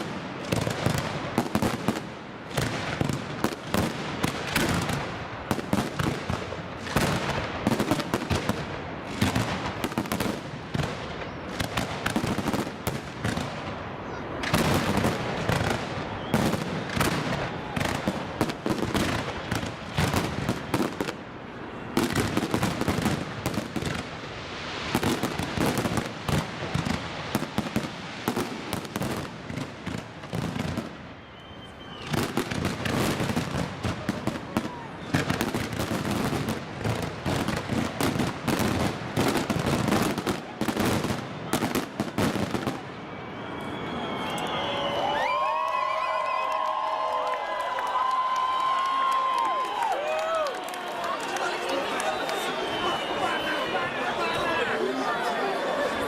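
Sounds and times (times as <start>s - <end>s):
fireworks bangs and crackles: 0.0s - 44.1s.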